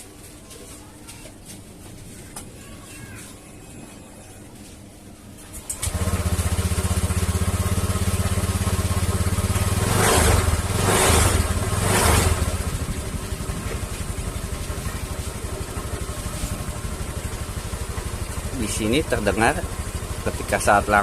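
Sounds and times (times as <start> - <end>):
scooter engine idling: 5.6 - 21.0.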